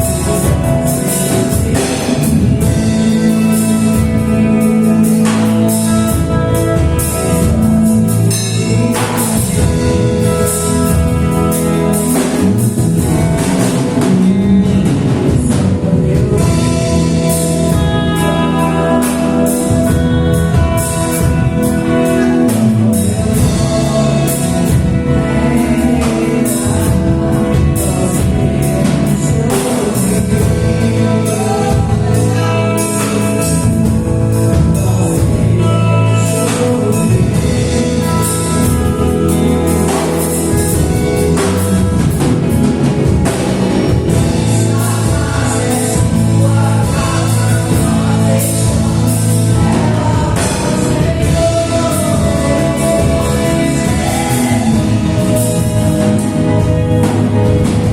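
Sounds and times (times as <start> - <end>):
drum kit: 0.0 - 57.9
singers: 0.0 - 57.9
sustained chords: 0.0 - 57.9.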